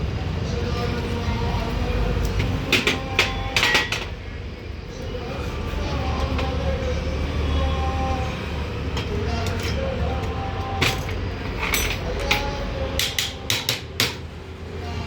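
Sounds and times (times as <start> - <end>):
low mechanical rumble: 0.0 - 15.0
sharp metallic clicks and knocks: 9.0 - 14.2.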